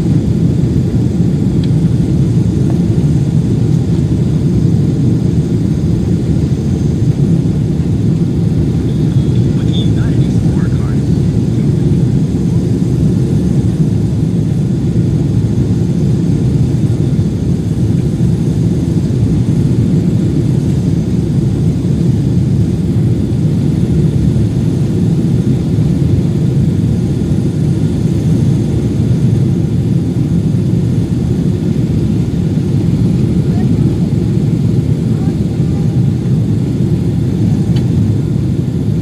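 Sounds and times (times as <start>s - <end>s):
airliner cabin rumble: 0.0s - 39.0s.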